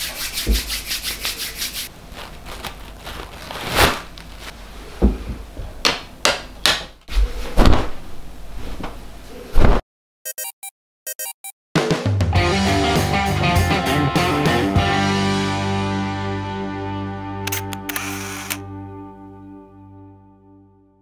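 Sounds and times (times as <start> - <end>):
rubbing and scraping: 0.0 - 4.6.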